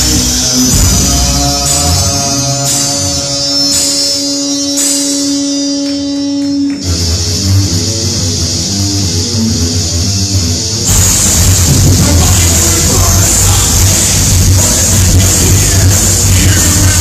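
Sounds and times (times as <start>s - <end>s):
cymbal crashes: 0.0s - 6.2s, 10.9s - 17.0s
heavy metal band playing: 0.0s - 17.0s.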